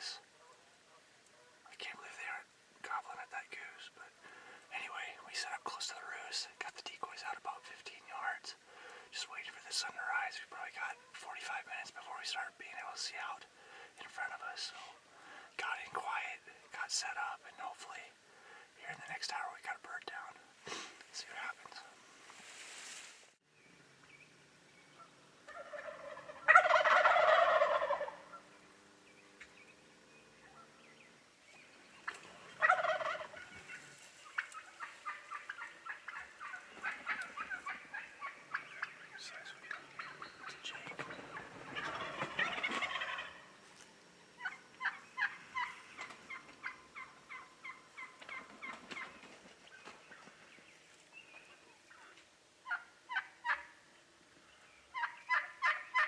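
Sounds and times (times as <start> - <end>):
quick short turkey calls: 25.0 - 28.3
turkeys gobbling: 25.0 - 28.4, 32.0 - 43.5, 44.4 - 49.3, 51.8 - 53.8, 54.9 - 56.0.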